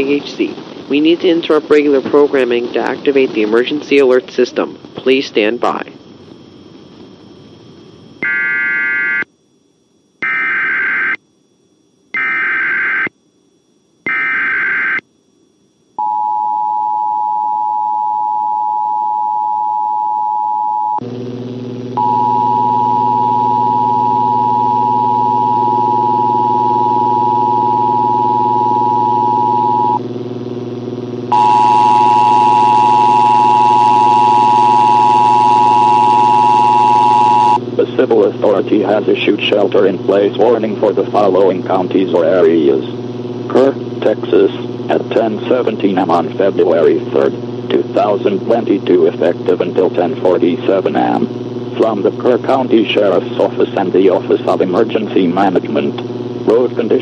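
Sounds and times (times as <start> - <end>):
low buzzing tone: 4.8 - 53.2
screechy data tones: 7.8 - 9.3, 10.2 - 11.2, 12.1 - 13.1, 14.0 - 15.0, 22.0 - 30.0, 31.3 - 37.6
two-tone attention signal: 22.0 - 30.0, 31.3 - 37.6.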